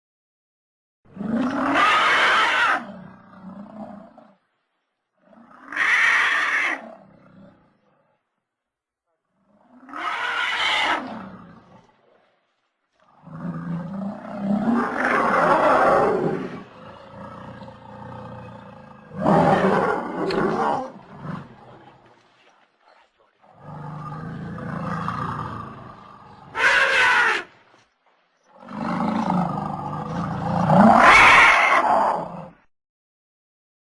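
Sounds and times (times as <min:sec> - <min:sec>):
deep roaring animal calls: 0:01.1 - 0:04.4, 0:05.2 - 0:08.1, 0:12.9 - 0:22.5, 0:23.4 - 0:27.8, 0:28.4 - 0:32.7.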